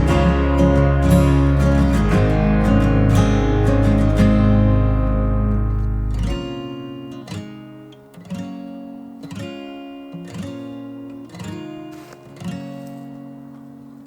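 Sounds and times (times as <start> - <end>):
deep low note: 0.0 - 6.8
acoustic guitar strumming: 0.0 - 14.0.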